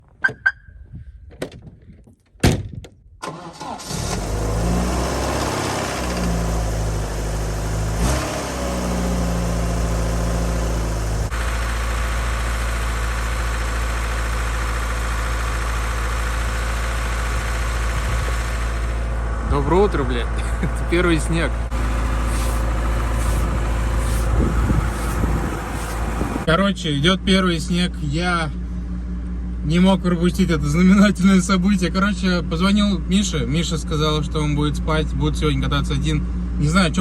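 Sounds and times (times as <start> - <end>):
car engine idling: 8.8 - 35.2.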